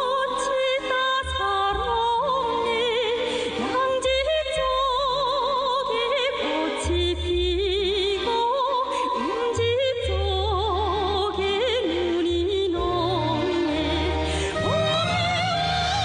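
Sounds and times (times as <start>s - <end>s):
song with heavy vibrato: 6.3s - 16.0s.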